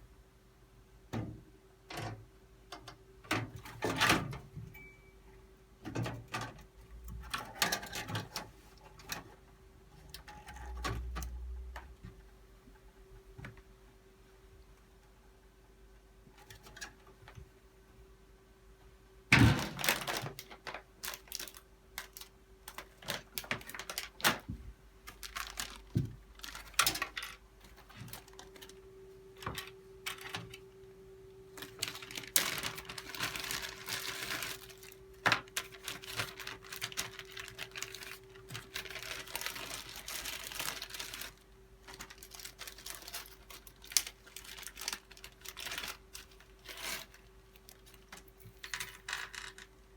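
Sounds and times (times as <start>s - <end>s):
faint steady hum: 0.0s - 49.9s
rustling or scraping: 31.6s - 49.7s.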